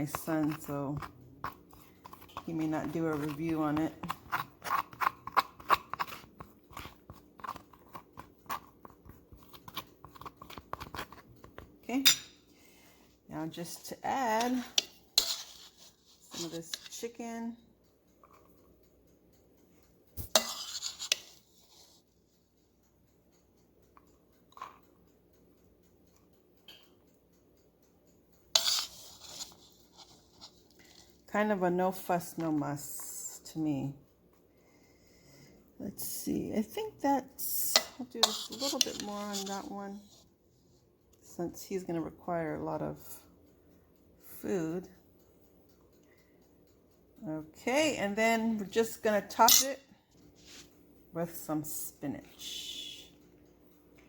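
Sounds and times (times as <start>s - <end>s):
loud rustling scrape: 20.4s - 22.0s, 28.6s - 30.6s.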